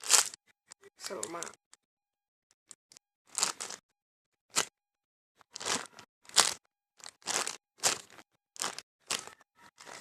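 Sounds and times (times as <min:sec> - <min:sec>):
plastic packaging crinkling: 0:00.0 - 0:00.4, 0:02.7 - 0:03.8, 0:05.4 - 0:10.0.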